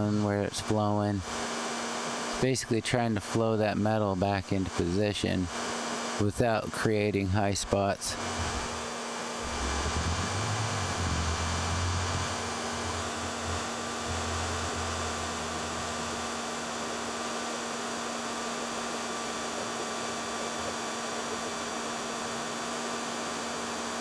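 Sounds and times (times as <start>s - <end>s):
low rumbling: 8.2s - 16.3s
hair dryer blowing: 8.2s - 24.0s.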